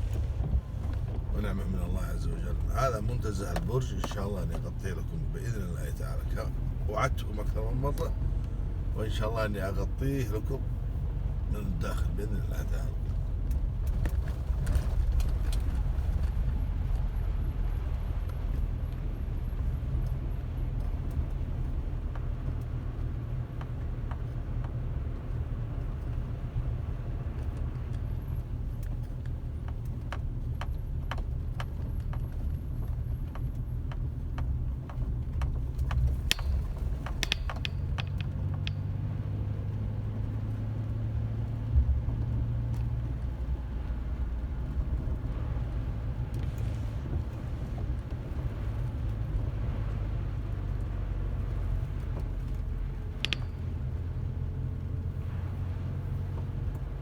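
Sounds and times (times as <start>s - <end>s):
car rumbling on the move: 0.0s - 57.0s
sharp clicks and ticks: 28.8s - 39.0s, 51.8s - 54.3s.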